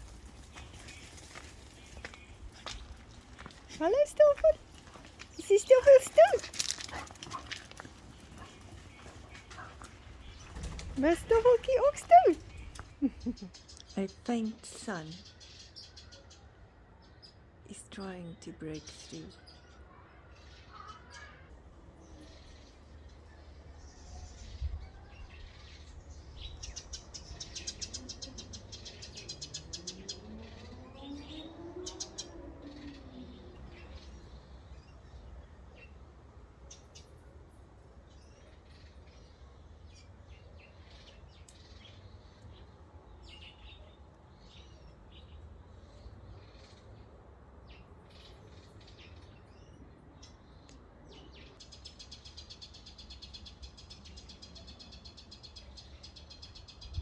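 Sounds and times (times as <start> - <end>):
birds chirping: 0.0 - 57.0
drawn-out rising and falling call: 26.6 - 34.5.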